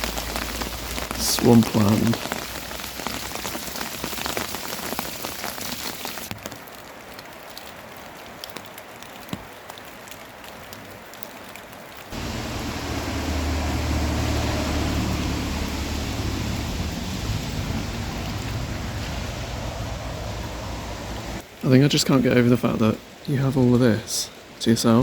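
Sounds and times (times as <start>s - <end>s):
rain pattering: 0.0s - 25.0s
steady low rushing noise: 12.1s - 21.4s.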